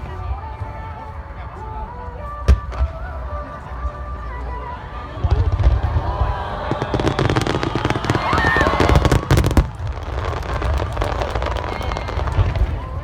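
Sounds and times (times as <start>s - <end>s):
fireworks crackling: 4.1s - 13.0s
fireworks booming rumble: 5.2s - 13.0s.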